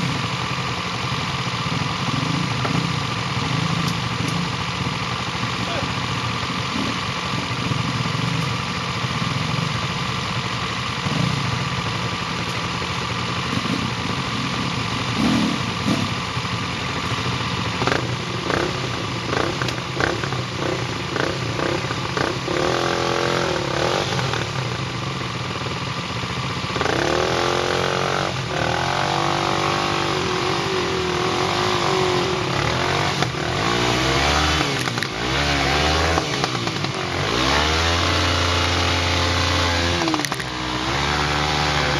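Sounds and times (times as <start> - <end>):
vehicle engine revving: 13.4 - 16.4, 17.8 - 24.8, 26.7 - 41.9.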